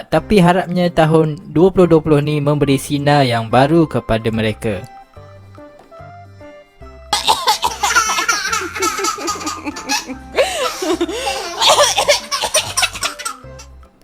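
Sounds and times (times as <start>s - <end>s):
background music with low beat: 0.0s - 14.0s
toddler laughing: 7.1s - 13.7s.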